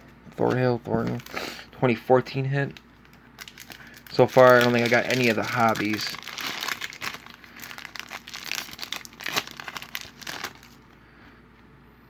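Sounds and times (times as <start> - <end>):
foil wrapper tearing and crinkling: 2.7 - 11.0.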